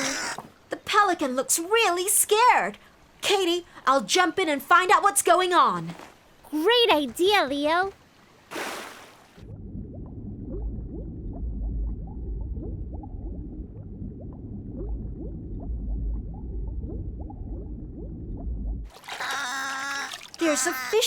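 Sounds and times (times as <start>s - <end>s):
underwater low rumble: 9.4s - 18.9s
bubbles gurgling: 9.4s - 21.0s.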